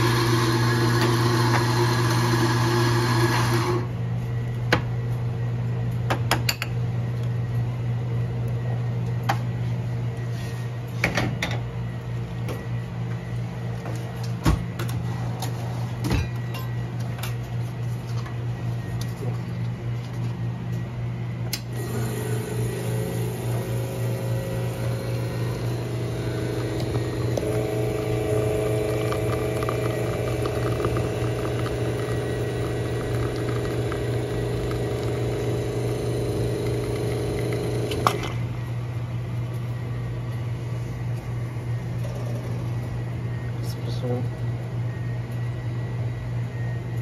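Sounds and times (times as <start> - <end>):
electric motor running: 0.0 - 3.9, 21.8 - 38.3
low mains hum: 0.0 - 47.0.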